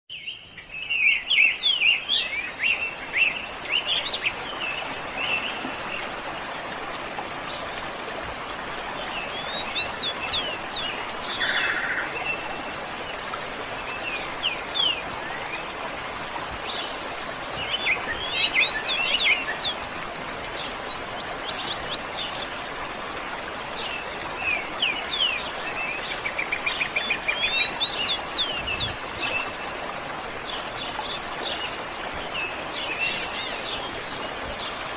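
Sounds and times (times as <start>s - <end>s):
waterfall rushing: 1.7s - 34.9s
birds chirping: 9.0s - 13.2s, 30.4s - 34.8s.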